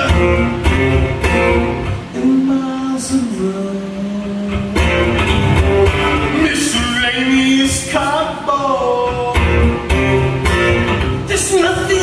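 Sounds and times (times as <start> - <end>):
acoustic guitar strummed chords: 0.0 - 12.0.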